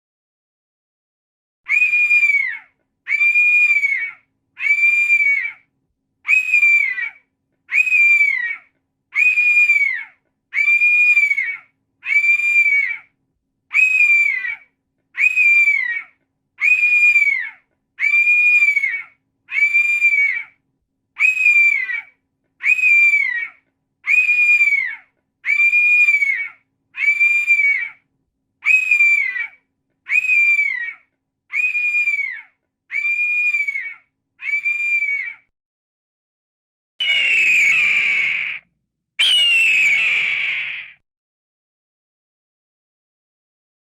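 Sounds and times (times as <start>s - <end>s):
hawk screaming: 37.0s - 38.6s, 39.2s - 41.0s.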